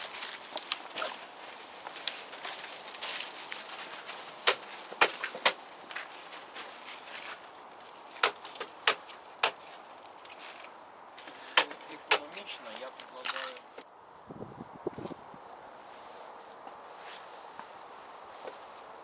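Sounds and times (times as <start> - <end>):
sharp knocks or clicks: 4.5 - 5.6, 8.1 - 9.6, 11.6 - 12.4.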